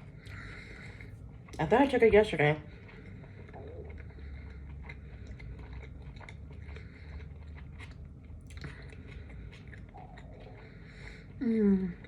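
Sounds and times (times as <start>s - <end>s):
person chewing with mouth clicks: 2.7s - 12.0s.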